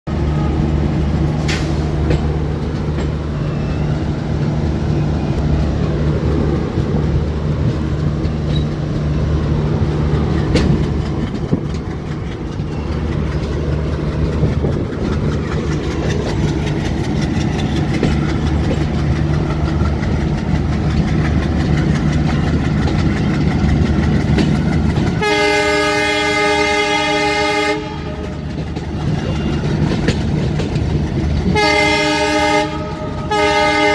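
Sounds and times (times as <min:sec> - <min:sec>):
locomotive engine running: 0:00.1 - 0:33.9
wheels clattering on rails: 0:01.2 - 0:03.4, 0:05.4 - 0:33.9
train air horn blast: 0:25.2 - 0:28.4, 0:31.5 - 0:33.9.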